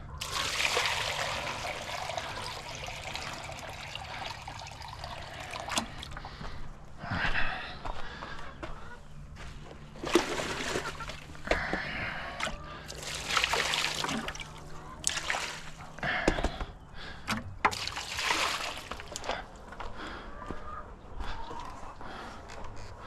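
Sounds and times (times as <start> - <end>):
water splashing and sloshing: 0.0 - 6.7, 9.8 - 19.8.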